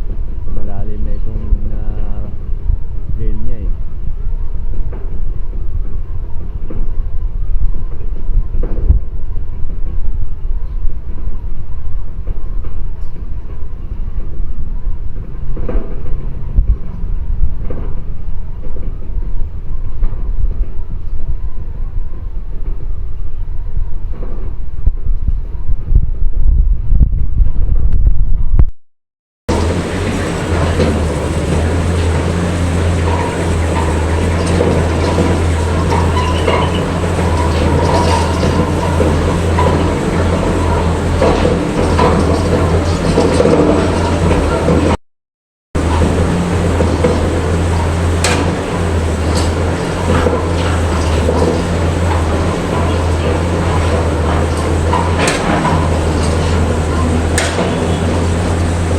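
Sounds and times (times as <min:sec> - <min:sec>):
drilling rig rumbling: 0:00.0 - 0:26.3, 0:29.5 - 0:45.0, 0:45.8 - 0:58.9
metallic clanks: 0:29.5 - 0:45.0, 0:45.8 - 0:58.9.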